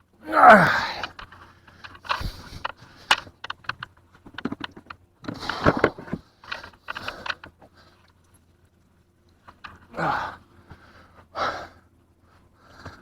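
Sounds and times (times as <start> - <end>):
fishing tackle clicks and rattles: 1.0 - 8.5.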